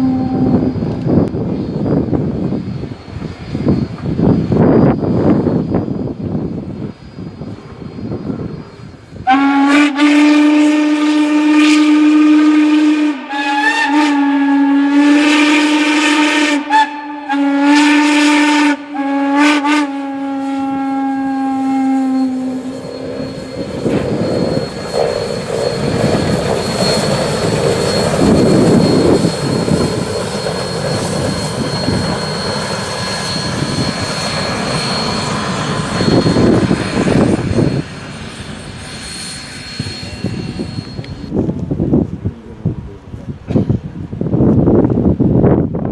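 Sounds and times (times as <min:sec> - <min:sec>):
steam locomotive whistle blasts: 0:00.0 - 0:01.2, 0:07.1 - 0:41.3.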